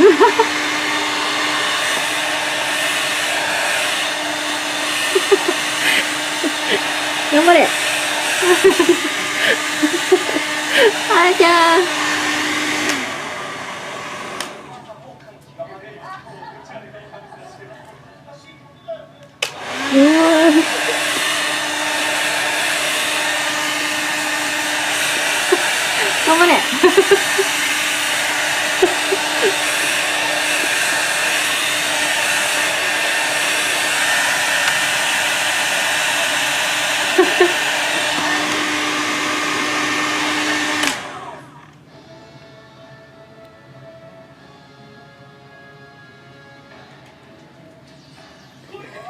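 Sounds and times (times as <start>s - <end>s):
hair dryer running: 0.0s - 14.9s, 19.4s - 42.2s
hair dryer switch click: 14.4s - 14.6s, 19.4s - 19.7s.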